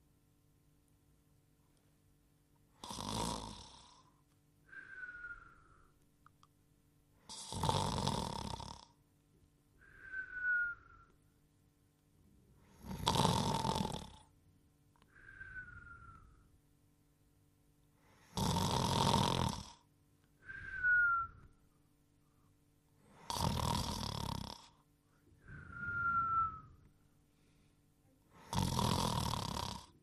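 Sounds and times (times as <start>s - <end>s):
cartoon snoring: 2.8s - 4.1s, 7.3s - 9.0s, 12.7s - 14.3s, 18.3s - 19.9s, 23.2s - 24.8s, 28.4s - 30.0s
falling whistle: 10.0s - 11.1s, 20.5s - 21.5s, 25.5s - 26.8s.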